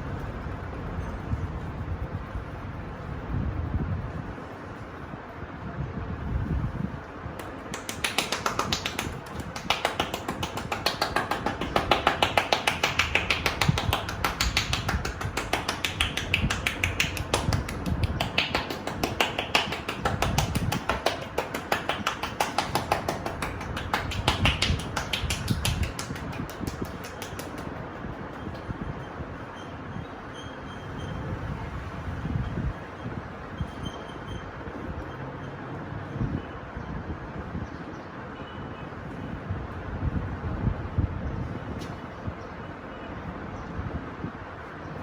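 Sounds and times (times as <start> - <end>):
hands striking in massage: 7.4 - 27.9.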